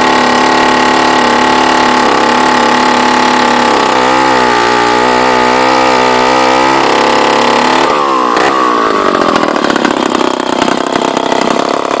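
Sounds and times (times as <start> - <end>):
chainsaw engine running: 0.0 - 12.0.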